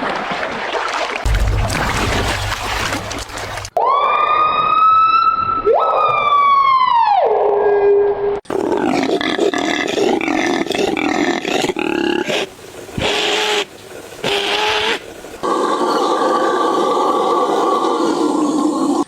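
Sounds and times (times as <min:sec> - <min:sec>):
overlapping wavering animal calls: 0:12.1 - 0:16.6.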